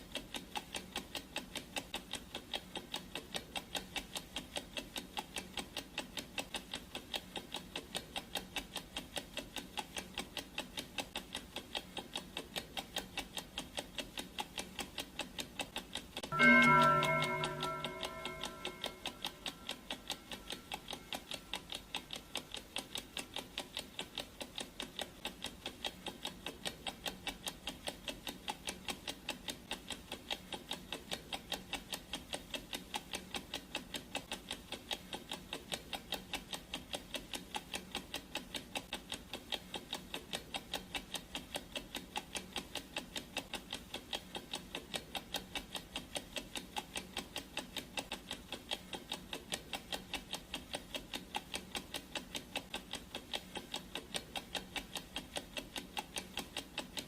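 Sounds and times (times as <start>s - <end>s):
clock ticking: 0.0s - 57.0s
ringing tone: 16.3s - 20.8s.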